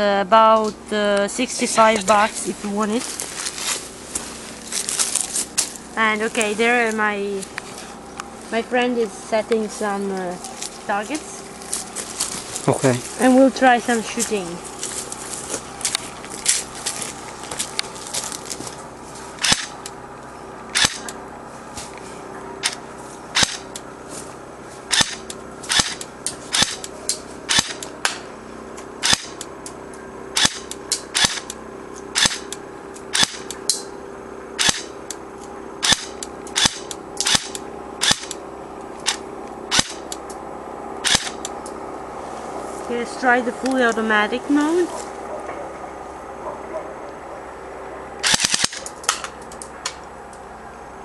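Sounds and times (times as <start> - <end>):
airsoft pistol shots snapping: 19.4 - 19.7, 20.8 - 21.1, 23.4 - 23.6, 24.9 - 26.9, 27.5 - 28.2, 29.0 - 29.4, 30.4 - 31.5, 32.2 - 32.5, 33.1 - 33.8, 34.6 - 34.9, 35.8 - 38.4, 39.1 - 40.1, 41.0 - 41.4, 48.2 - 49.3.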